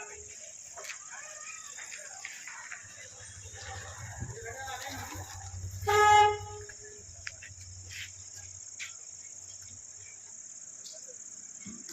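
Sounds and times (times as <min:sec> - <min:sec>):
crickets droning: 0:00.0 - 0:11.9
low pulsing hum: 0:03.2 - 0:07.9.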